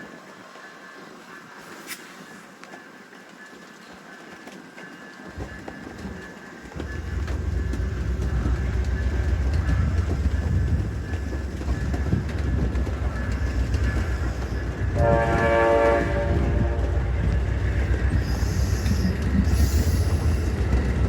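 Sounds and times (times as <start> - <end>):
train passing rumble: 0.0 - 21.0
train horn: 14.0 - 20.2.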